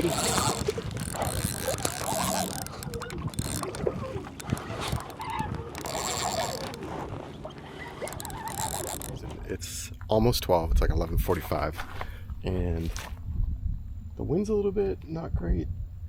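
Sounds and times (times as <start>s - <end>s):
kayak pedal drive clicking: 0.0s - 9.2s
water moving along hull: 0.0s - 10.1s.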